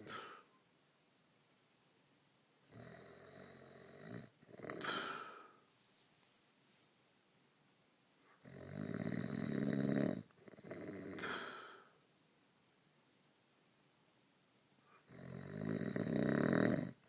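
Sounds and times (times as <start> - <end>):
person snoring: 0.0 - 0.5, 2.7 - 5.6, 8.4 - 11.9, 15.1 - 17.0.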